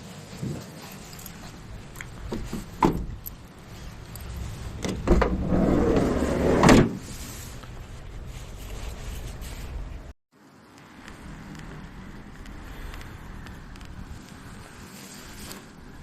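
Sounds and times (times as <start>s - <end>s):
door shutting thump: 4.8s - 5.4s
sliding door rolling on track: 4.9s - 7.1s.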